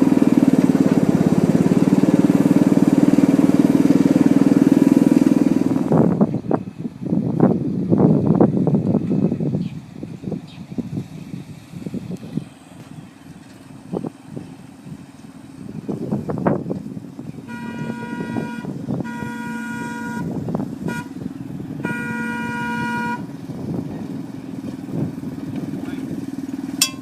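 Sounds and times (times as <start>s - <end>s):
locomotive motor running: 0.0s - 6.9s, 12.0s - 27.0s
locomotive horn blasts: 17.4s - 21.2s, 21.8s - 23.3s.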